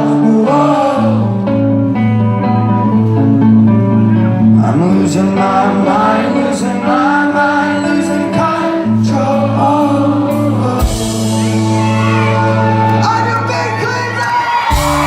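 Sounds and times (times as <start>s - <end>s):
man singing lead vocal: 0.0s - 1.6s, 4.4s - 14.2s
live rock band playing: 0.0s - 15.0s.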